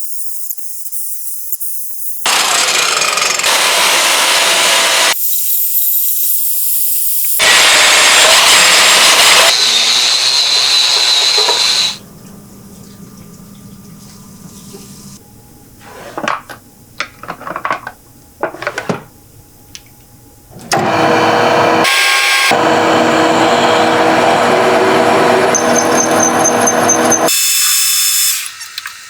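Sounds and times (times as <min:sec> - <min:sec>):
power tool running: 0:02.2 - 0:05.5, 0:07.2 - 0:12.0, 0:20.5 - 0:28.6
tools knocking and clicking: 0:16.2 - 0:19.0.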